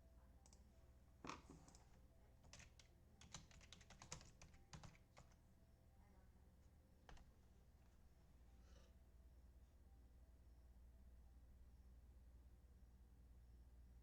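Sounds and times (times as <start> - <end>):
faint keyboard typing: 0.3 - 5.5, 7.0 - 7.4.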